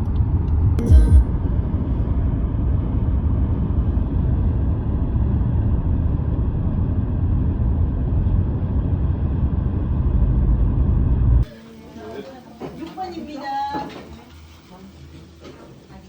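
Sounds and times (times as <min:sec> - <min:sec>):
moving vehicle rumble: 0:00.0 - 0:11.4.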